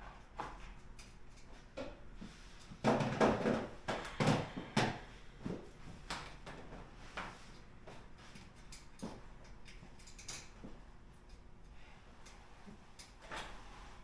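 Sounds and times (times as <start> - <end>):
knocks and clatter of objects: 2.8 - 5.0.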